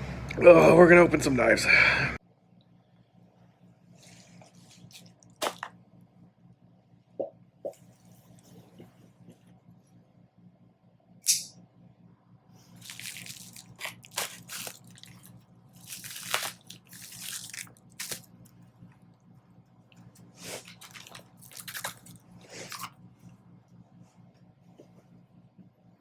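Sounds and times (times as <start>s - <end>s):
faint low hum: 0.0s - 26.0s
packaging crinkling and tearing: 4.7s - 5.7s, 12.7s - 18.5s, 20.4s - 22.9s.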